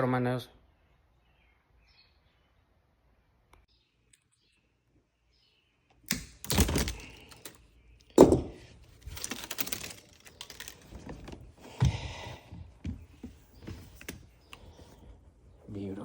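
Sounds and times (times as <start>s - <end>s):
cable clattering and scraping: 8.2s - 11.6s.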